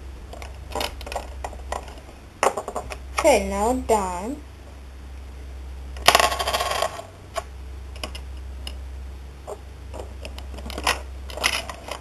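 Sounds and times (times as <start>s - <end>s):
low hum: 0.0s - 12.0s
plastic parts clicking and clattering: 0.3s - 3.0s, 9.5s - 12.0s.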